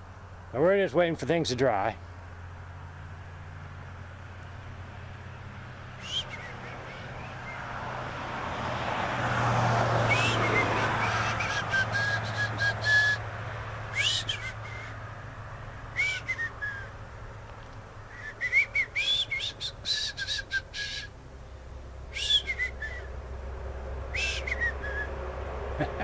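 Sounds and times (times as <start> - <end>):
songbird chirping: 3.2 - 7.8, 10.1 - 25.8.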